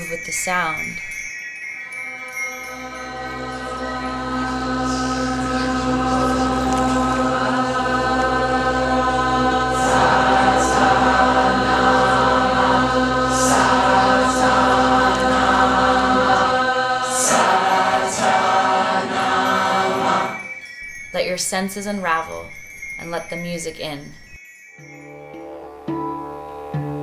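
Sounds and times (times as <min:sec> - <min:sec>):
high chime-like shimmers: 0:00.0 - 0:27.0
sustained ambient tones: 0:00.0 - 0:27.0
didgeridoo drone: 0:02.6 - 0:20.6, 0:24.8 - 0:27.0.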